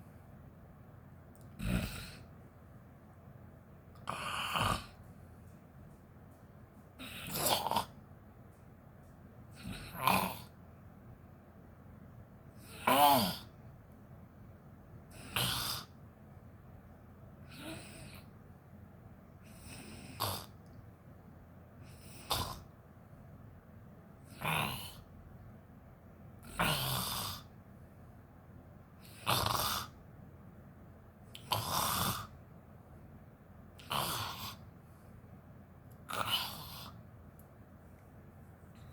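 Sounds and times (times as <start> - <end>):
woman snoring: 1.5 - 2.3, 4.0 - 5.0, 7.0 - 8.0, 9.6 - 10.6, 12.6 - 13.6, 15.1 - 16.0, 17.4 - 18.3, 19.5 - 20.6, 21.9 - 22.7, 24.3 - 25.1, 26.4 - 27.5, 29.0 - 30.0, 31.4 - 32.4, 33.8 - 34.6, 36.1 - 37.0.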